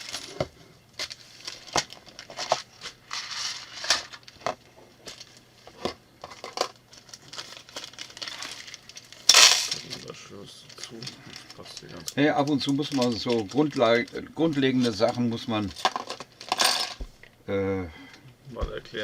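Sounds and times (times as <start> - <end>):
plastic bags crinkling: 6.2 - 16.8.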